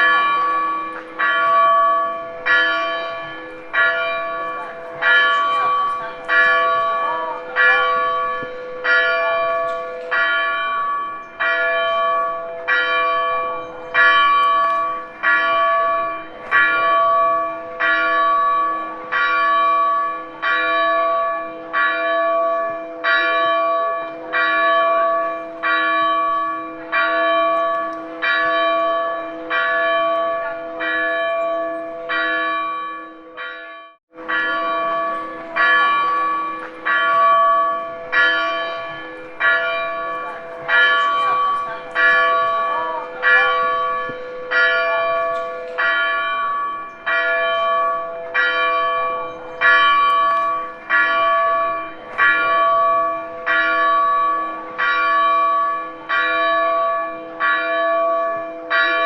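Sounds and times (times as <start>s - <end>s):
church bell tolling: 0.0s - 59.0s.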